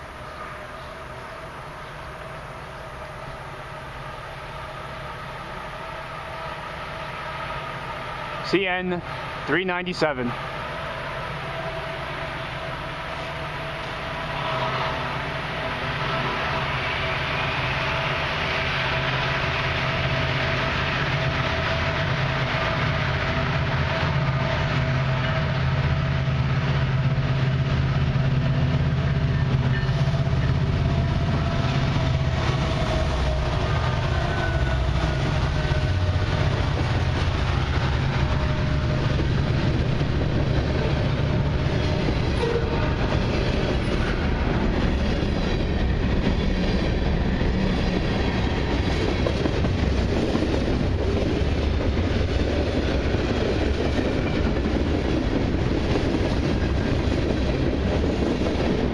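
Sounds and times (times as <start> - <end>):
freight train wheels clattering: 17.0 - 58.9.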